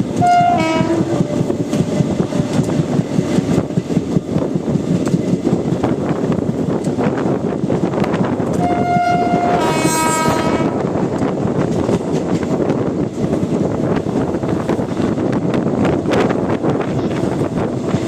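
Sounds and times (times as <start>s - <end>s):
train wheels rumbling on track: 0.0s - 18.0s
two-tone locomotive horn: 0.1s - 1.5s, 8.5s - 10.9s.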